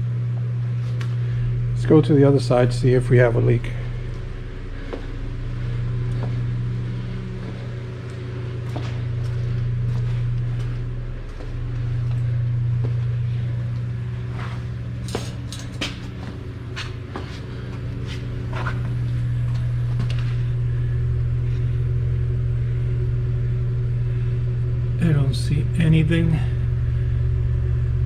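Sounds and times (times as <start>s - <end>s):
air pump humming: 0.0s - 28.0s.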